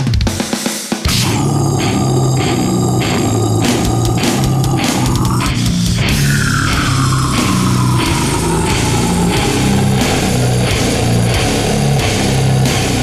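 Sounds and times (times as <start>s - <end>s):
heavy rock music: 0.0s - 13.0s
high sliding tone falling: 6.1s - 11.4s.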